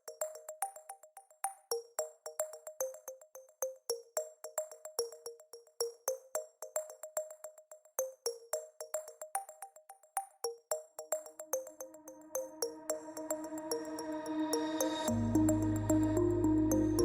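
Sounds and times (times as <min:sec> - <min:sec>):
electronic music with plucked synth: 0:15.1 - 0:17.0.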